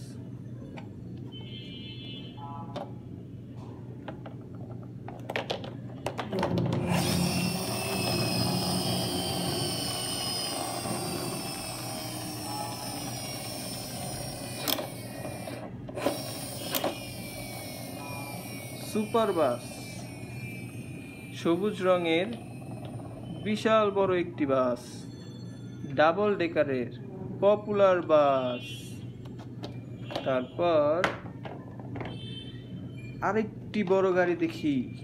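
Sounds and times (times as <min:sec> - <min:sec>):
toy motor whirring: 0:06.7 - 0:23.7.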